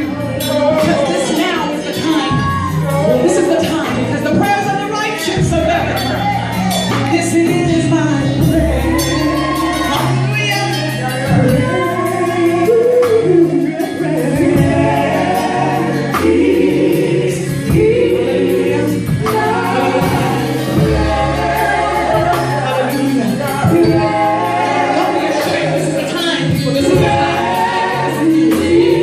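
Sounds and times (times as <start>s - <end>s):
band bass notes: 0.0s - 29.0s
steady drum beat: 0.0s - 29.0s
choir singing: 6.0s - 29.0s.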